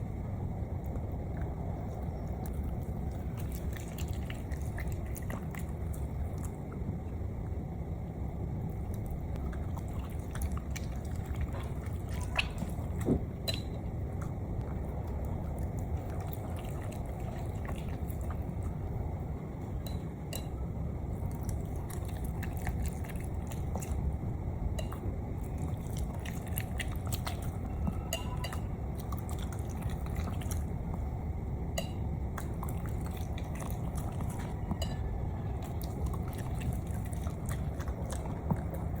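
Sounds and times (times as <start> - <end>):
dog chewing and smacking: 8.7 - 19.0, 21.2 - 31.0, 32.4 - 34.8, 35.6 - 39.0.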